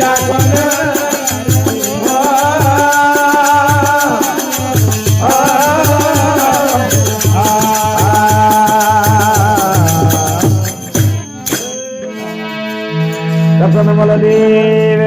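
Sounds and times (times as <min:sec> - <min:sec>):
steady drum beat: 0:00.0 - 0:12.0
jingling percussion: 0:00.0 - 0:15.0
wavering folk vocal melody: 0:00.0 - 0:15.0.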